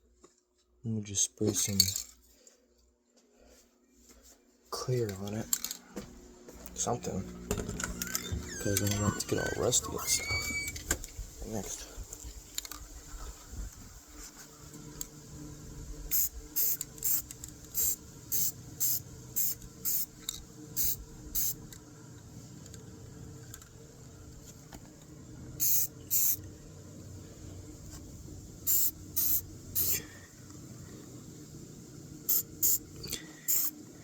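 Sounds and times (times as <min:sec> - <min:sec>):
aerosol spray can hissing: 0:16.1 - 0:20.2, 0:20.8 - 0:21.7, 0:25.6 - 0:26.4, 0:28.6 - 0:30.1, 0:32.2 - 0:33.8.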